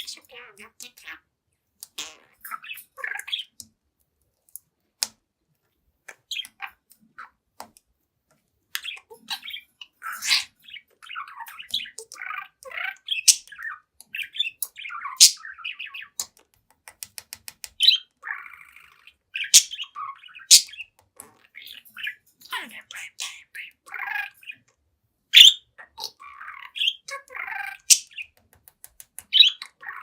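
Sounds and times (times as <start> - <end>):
budgerigar warbling and chattering: 1.9 - 3.6, 6.3 - 7.4, 8.8 - 16.3, 17.8 - 24.7, 25.3 - 28.4, 29.3 - 30.0.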